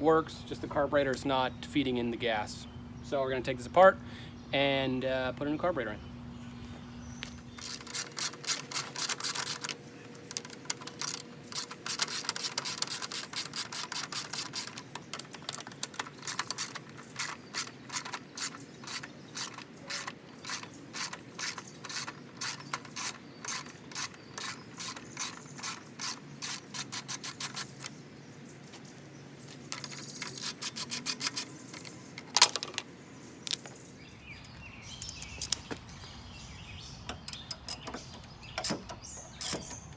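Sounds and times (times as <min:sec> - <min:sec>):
socket ratchet clicking: 0:07.5 - 0:28.0, 0:29.7 - 0:32.6, 0:37.1 - 0:39.9.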